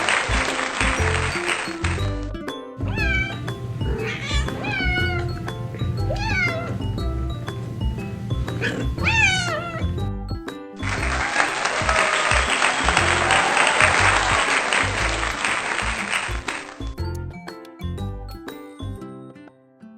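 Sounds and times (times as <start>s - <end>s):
applause: 0.0s - 2.1s, 10.8s - 16.9s
background music with steady beat: 0.0s - 19.0s
cat meowing: 2.8s - 7.0s, 8.5s - 10.0s.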